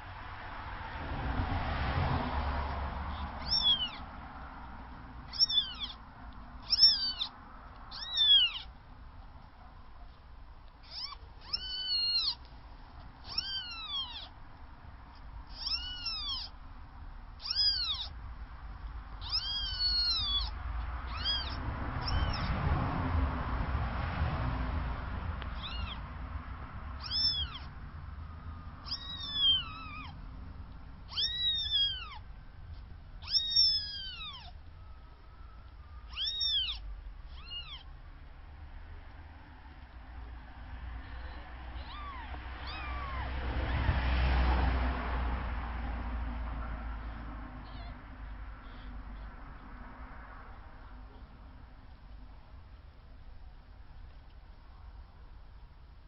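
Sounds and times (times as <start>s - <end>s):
newborn kittens mewing: 3.1s - 4.3s, 5.2s - 8.8s, 10.6s - 14.4s, 15.1s - 16.7s, 17.3s - 18.3s, 19.1s - 22.6s, 25.4s - 26.2s, 27.0s - 27.9s, 28.8s - 30.2s, 31.0s - 34.7s, 36.1s - 38.0s, 41.0s - 44.0s, 46.6s - 49.8s.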